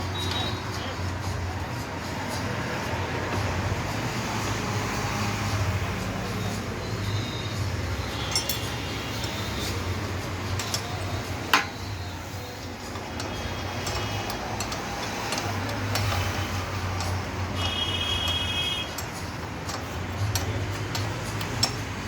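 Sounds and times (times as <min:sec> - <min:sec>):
sharp metallic clink: 0:08.0 - 0:09.7.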